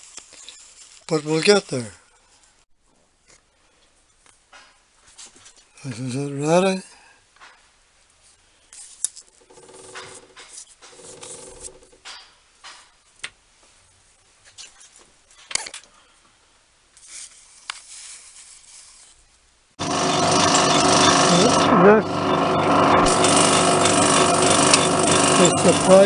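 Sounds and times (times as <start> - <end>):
metal lathe running: 19.8 - 26.0.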